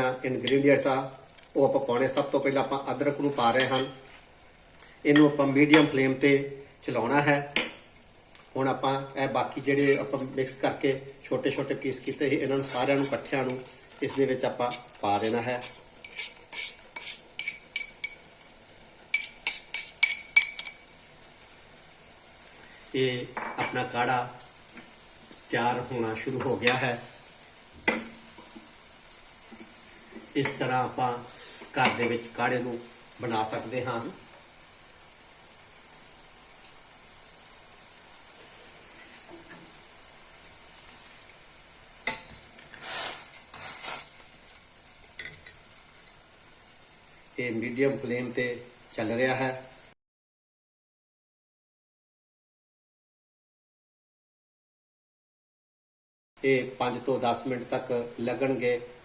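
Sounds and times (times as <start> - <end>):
pan simmering hiss: 0.0 - 50.0, 56.4 - 59.0
scraping and stirring in pan: 0.4 - 6.0, 9.5 - 21.7, 26.2 - 32.4, 38.3 - 47.3
metal utensil tapping metal pan: 14.7 - 18.2, 19.1 - 20.8, 42.0 - 42.4, 45.2 - 45.6.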